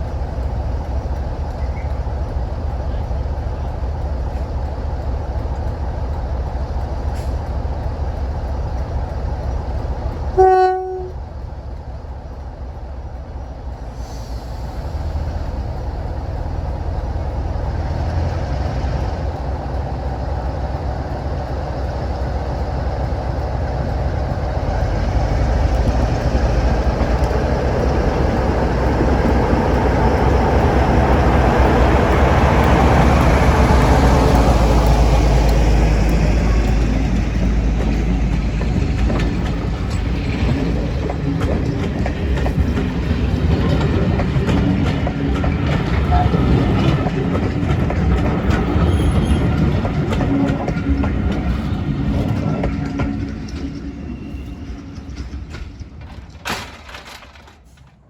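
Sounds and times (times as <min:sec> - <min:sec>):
locomotive engine rumble: 0:00.0 - 0:58.0
locomotive horn blast: 0:10.4 - 0:11.2.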